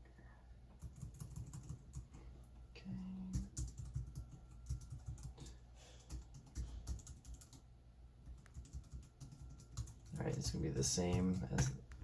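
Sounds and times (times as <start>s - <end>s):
keyboard typing: 0.8s - 2.2s, 3.3s - 7.6s, 8.2s - 12.0s.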